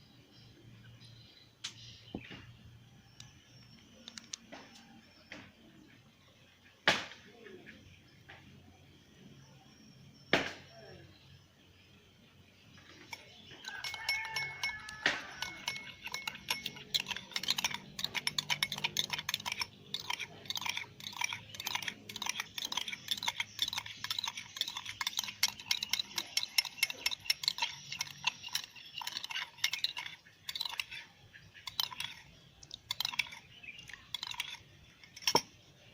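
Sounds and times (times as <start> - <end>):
spoon clinking in a glass: 13.0 - 35.6.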